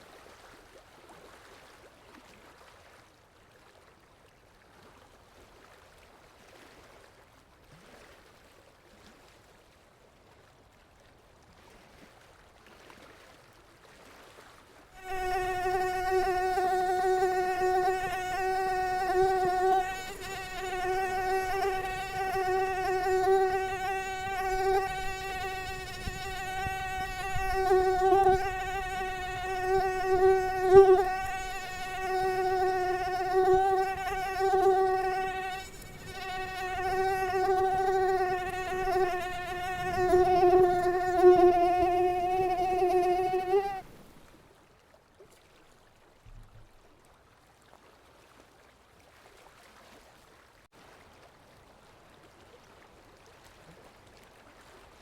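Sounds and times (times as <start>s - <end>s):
mosquito whining: 15.0s - 43.8s.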